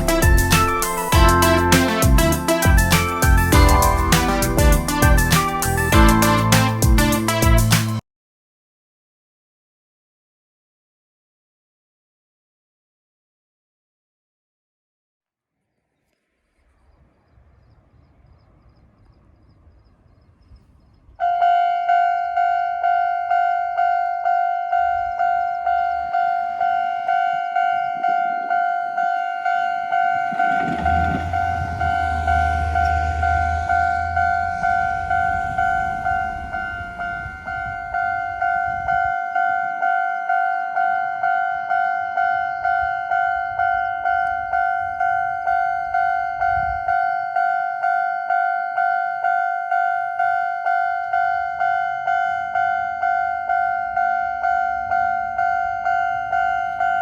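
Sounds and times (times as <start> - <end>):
train rumbling and rattling: 0.0 - 7.7, 17.0 - 21.2, 30.1 - 39.0
level-crossing two-tone electronic ding: 0.2 - 6.2.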